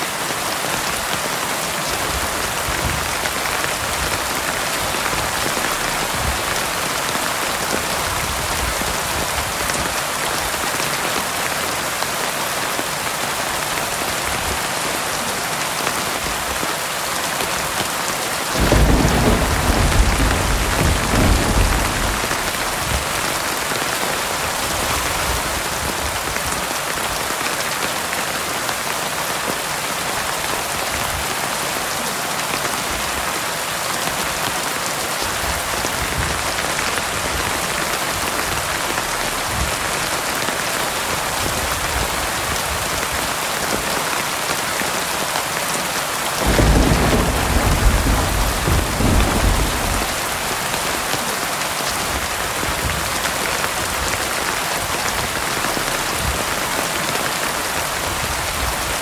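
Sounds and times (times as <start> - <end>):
heavy rain pouring: 0.0 - 59.0
thunder rumbling: 18.6 - 25.8, 46.4 - 51.0.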